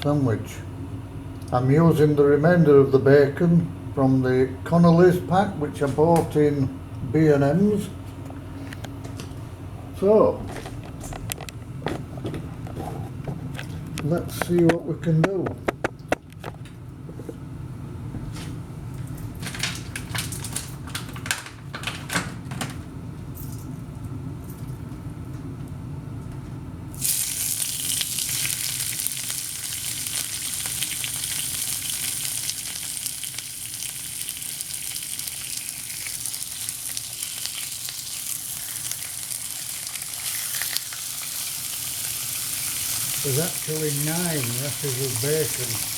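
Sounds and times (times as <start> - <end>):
bacon sizzling in a pan: 27.0 - 45.9.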